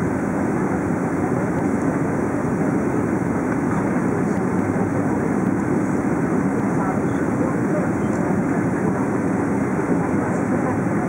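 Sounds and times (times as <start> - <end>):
jet engine roar in cabin: 0.0 - 11.0.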